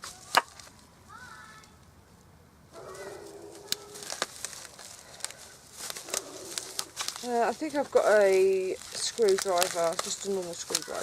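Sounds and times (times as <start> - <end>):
bubble wrap popping: 3.1 - 11.0.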